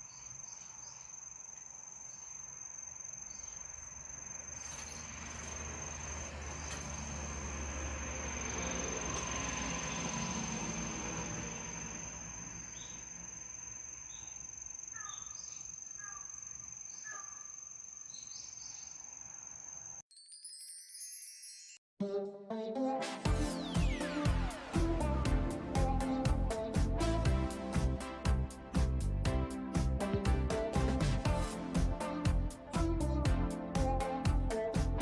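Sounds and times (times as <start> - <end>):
crickets trilling: 0.0 - 20.0
low rumble: 23.3 - 35.0.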